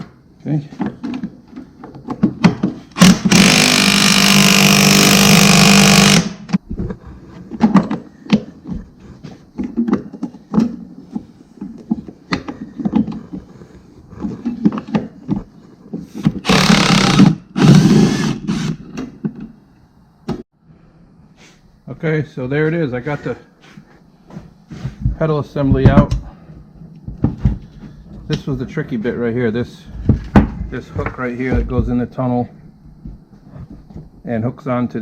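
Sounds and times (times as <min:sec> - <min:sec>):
handheld power tool running: 0:03.0 - 0:06.5, 0:16.4 - 0:18.8.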